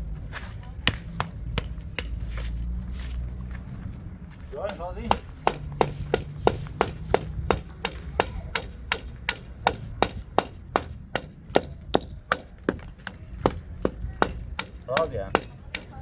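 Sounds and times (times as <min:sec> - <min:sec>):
knife chopping on a board: 0:04.6 - 0:15.9.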